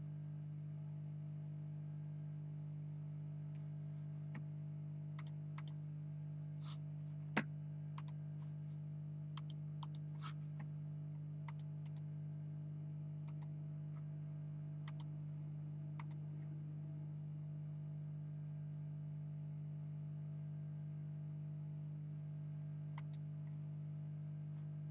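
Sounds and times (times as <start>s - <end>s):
low electrical hum: 0.0s - 24.9s
light clicks: 5.2s - 5.8s, 9.4s - 10.0s, 14.9s - 15.1s.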